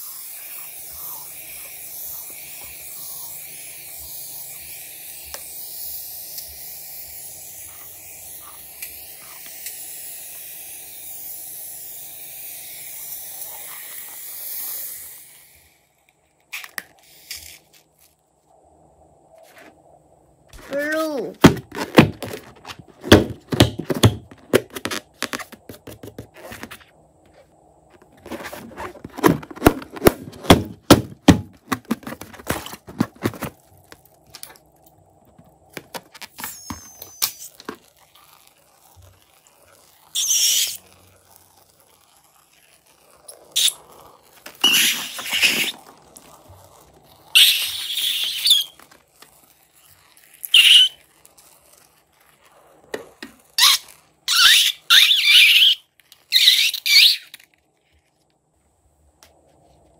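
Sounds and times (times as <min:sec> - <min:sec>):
hissing squirts: 0:00.0 - 0:18.0, 0:35.6 - 0:57.5.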